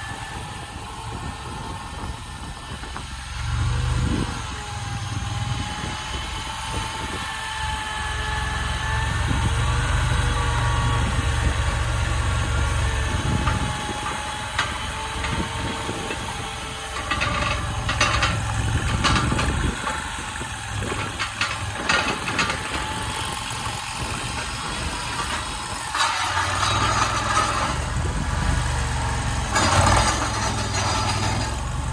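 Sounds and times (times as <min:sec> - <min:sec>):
mini skid steer engine running: 0:00.0 - 0:31.9
metallic clanks and rattles: 0:12.9 - 0:31.9.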